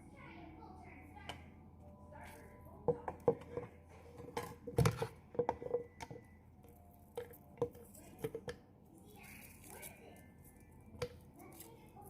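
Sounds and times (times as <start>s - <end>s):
dishes clinking: 2.8s - 6.3s.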